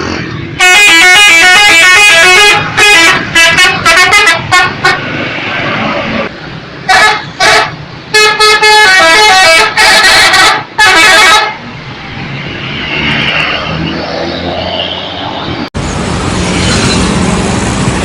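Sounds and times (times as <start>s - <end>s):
street noise: 0.0s - 18.0s
musical bus horn: 0.6s - 5.1s, 6.9s - 11.6s
vehicle engine: 11.5s - 18.0s.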